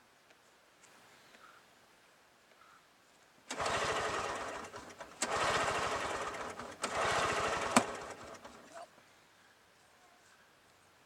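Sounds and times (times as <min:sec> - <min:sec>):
snowblower engine cranking: 0:03.5 - 0:08.8.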